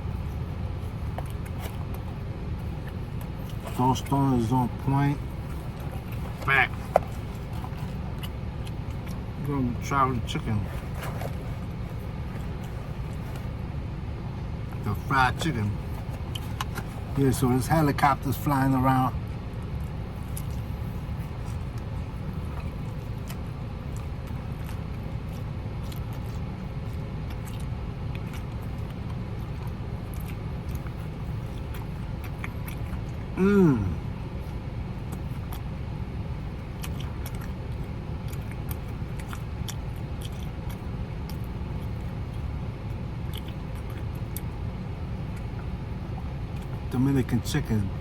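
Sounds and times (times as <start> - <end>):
chewing clicks: 16.0 - 16.9, 19.6 - 20.8, 21.5 - 33.3, 34.4 - 35.7, 36.6 - 44.6
person humming: 33.4 - 34.0.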